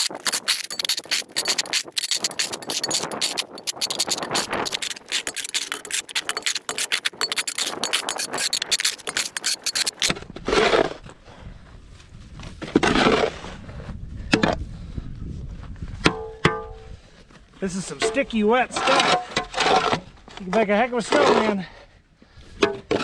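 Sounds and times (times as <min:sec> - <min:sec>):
shovel scraping wet snow: 0:00.0 - 0:11.0, 0:17.7 - 0:21.6.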